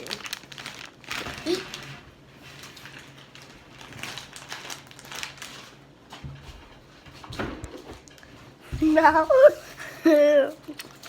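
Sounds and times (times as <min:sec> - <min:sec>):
food wrapper crinkling: 0:00.0 - 0:06.7, 0:10.3 - 0:11.0.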